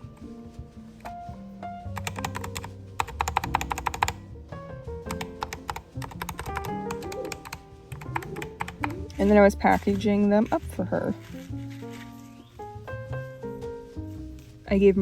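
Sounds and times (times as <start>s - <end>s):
background music: 0.0s - 15.0s
computer keyboard typing: 2.0s - 4.2s, 5.1s - 9.4s.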